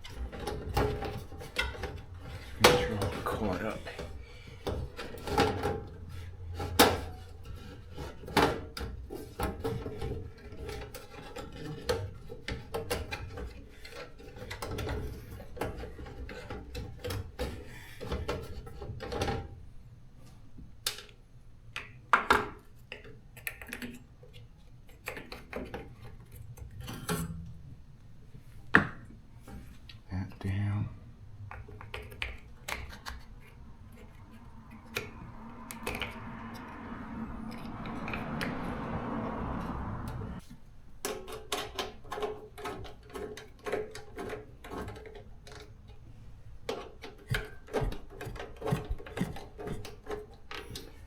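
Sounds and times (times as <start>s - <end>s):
tools clicking and knocking: 41.0s - 46.0s, 46.6s - 51.0s.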